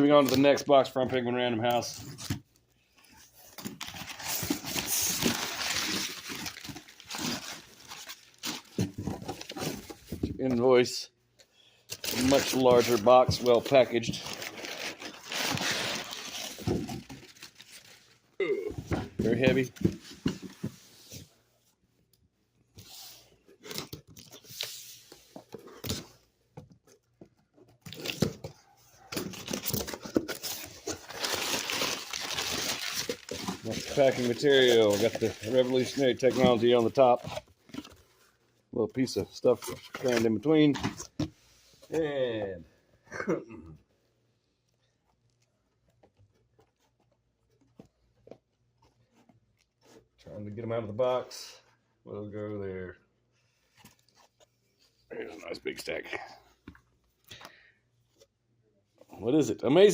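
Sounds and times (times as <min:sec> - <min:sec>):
packing material rustling: 0:03.5 - 0:09.9, 0:11.9 - 0:18.2, 0:29.0 - 0:38.0.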